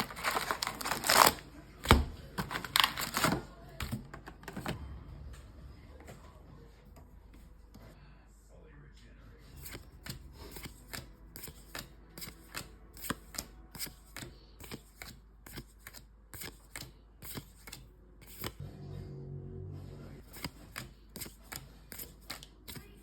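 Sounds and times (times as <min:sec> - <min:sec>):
cards flicking and snapping: 0:09.6 - 0:18.6, 0:20.3 - 0:23.0.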